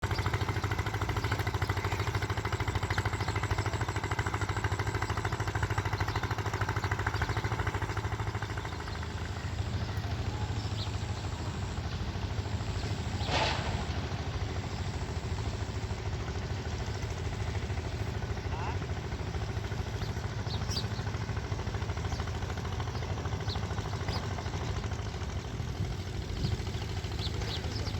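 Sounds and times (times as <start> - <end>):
engine running with low throb: 0.0 - 27.9
brief hiss: 13.2 - 14.0.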